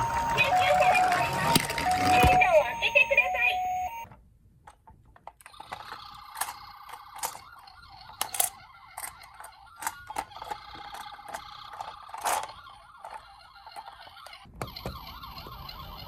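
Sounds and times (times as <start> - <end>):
toy siren wailing: 0.0 - 4.0, 5.5 - 16.0
toy cars clicking and knocking: 4.7 - 15.0.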